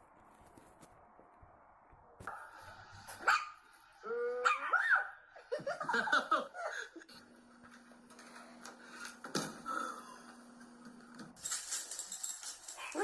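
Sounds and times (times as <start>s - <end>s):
dog barking and yipping: 3.2s - 3.6s, 4.4s - 5.2s.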